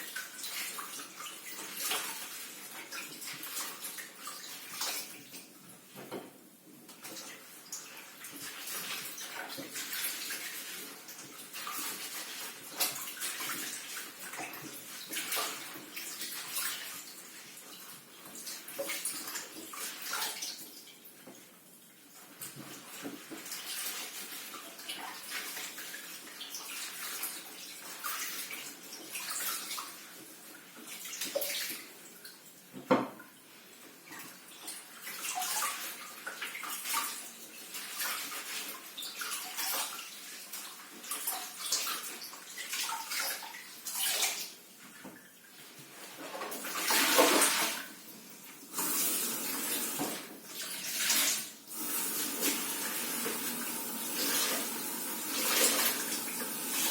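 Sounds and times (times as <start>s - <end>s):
water running from a tap: 48.7s - 56.9s.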